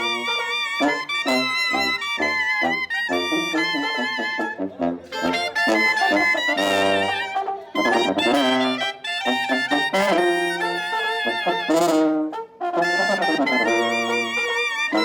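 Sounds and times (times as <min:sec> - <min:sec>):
brass band playing: 0:00.0 - 0:15.0.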